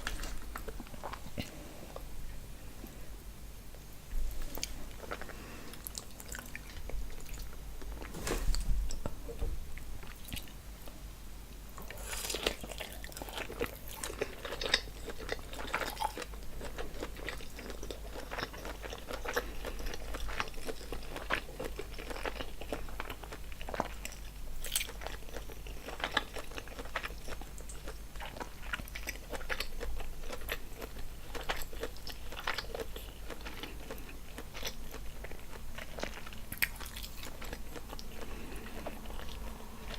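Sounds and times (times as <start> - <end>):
person chewing and smacking: 0.0 - 2.1, 3.7 - 8.1, 11.8 - 39.9.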